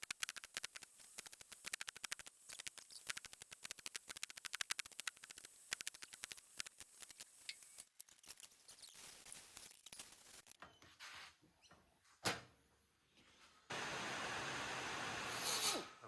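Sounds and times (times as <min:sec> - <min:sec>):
steady hiss: 0:13.7 - 0:16.0.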